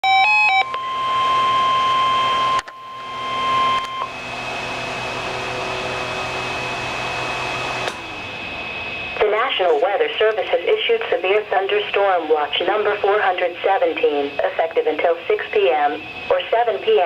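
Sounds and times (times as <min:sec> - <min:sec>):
emergency alert tone: 0:00.0 - 0:17.0
radio hiss with faint whine: 0:08.1 - 0:17.0.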